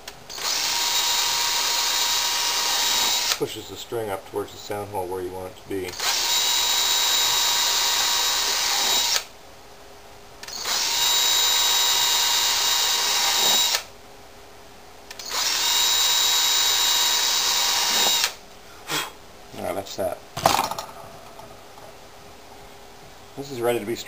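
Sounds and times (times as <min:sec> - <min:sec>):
small power drill whining: 0:00.3 - 0:03.4, 0:05.9 - 0:09.3, 0:10.4 - 0:13.9, 0:15.2 - 0:18.4.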